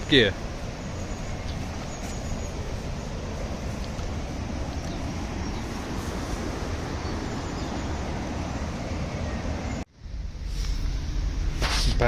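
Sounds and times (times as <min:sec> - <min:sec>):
bicycle rolling rumble and hiss: 0:00.0 - 0:12.0.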